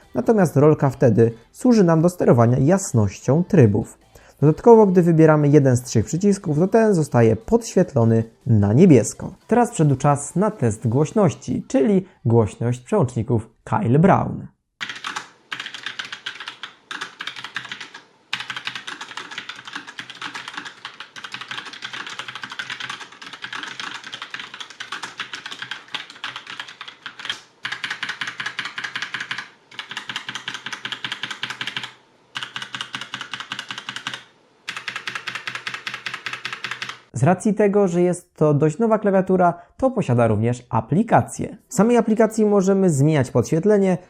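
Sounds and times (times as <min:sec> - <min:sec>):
mechanical keyboard typing: 0:14.8 - 0:37.1.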